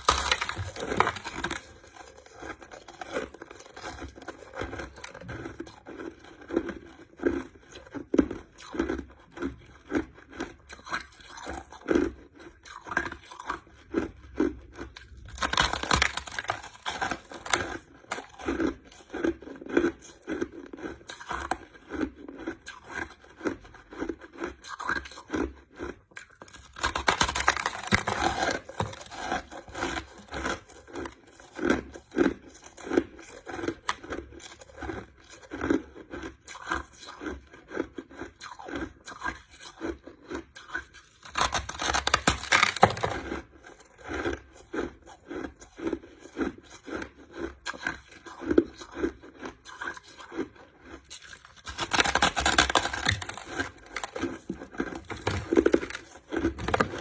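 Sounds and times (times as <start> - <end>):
person chewing crushed ice: 0.0 - 57.0.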